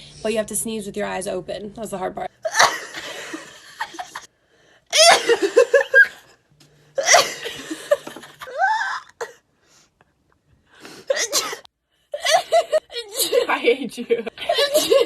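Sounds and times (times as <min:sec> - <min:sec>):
girls giggling: 0:02.4 - 0:04.3, 0:04.9 - 0:06.4, 0:12.2 - 0:13.6, 0:14.4 - 0:15.0
girls sneezing: 0:11.0 - 0:11.7.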